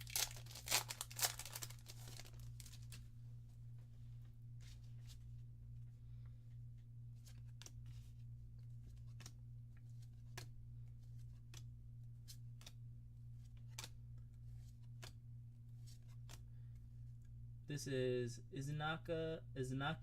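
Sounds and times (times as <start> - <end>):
steady low hum: 0.0 - 20.0
cards flipping soft clicks: 6.2 - 17.4.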